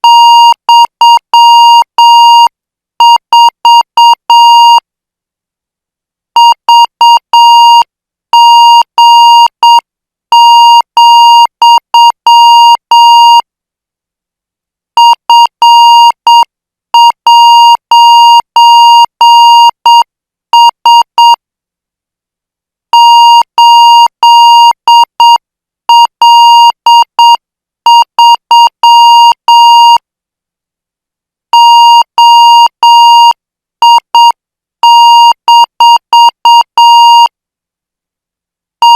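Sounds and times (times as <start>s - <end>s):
morse code tone: 0.0s - 4.8s, 10.4s - 13.4s, 15.0s - 16.4s, 17.0s - 20.0s, 23.0s - 30.0s, 31.6s - 37.3s.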